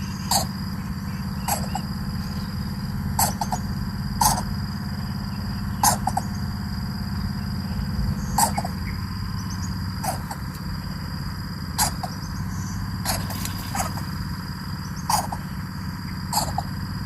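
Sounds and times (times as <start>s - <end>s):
steady low hum: 0.0s - 17.0s
chicks making short sharp sounds: 13.0s - 14.2s, 15.0s - 15.5s, 16.3s - 16.7s.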